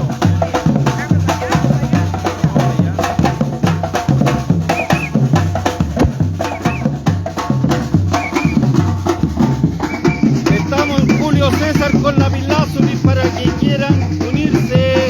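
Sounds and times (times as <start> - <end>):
bass drum strokes: 0.0 - 15.0
sharp drum hits: 5.8 - 6.7.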